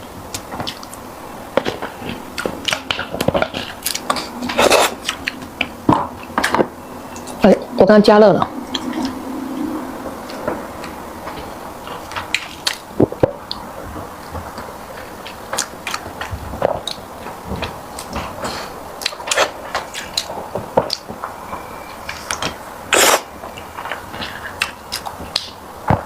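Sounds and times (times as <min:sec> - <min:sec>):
person chewing sticky rice: 0:00.3 - 0:05.8, 0:12.0 - 0:21.1.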